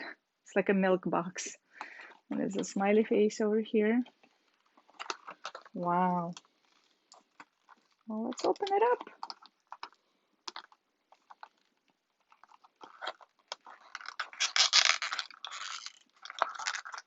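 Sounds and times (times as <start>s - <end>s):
packaging crinkling and rustling: 3.8s - 17.0s.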